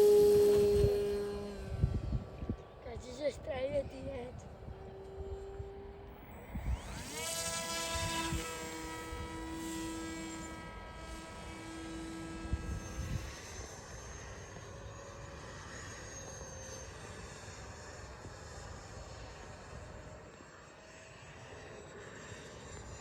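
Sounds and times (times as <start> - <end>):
wind rumbling on microphone: 0.0 - 13.9
model airplane motor whining: 0.0 - 23.0.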